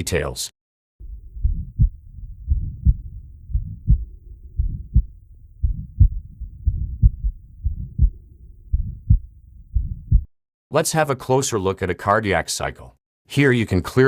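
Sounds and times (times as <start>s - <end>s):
heart murmur: 1.0s - 10.3s
heartbeat through stethoscope: 1.0s - 10.3s.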